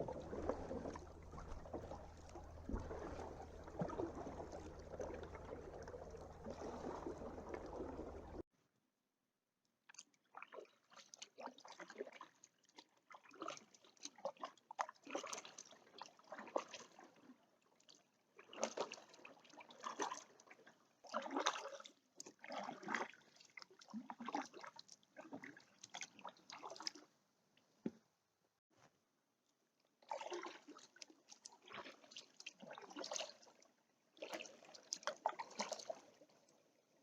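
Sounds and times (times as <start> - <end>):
paddle splashing in water: 0.0 - 8.4, 30.1 - 33.6, 34.2 - 36.5
water dripping: 0.0 - 8.4.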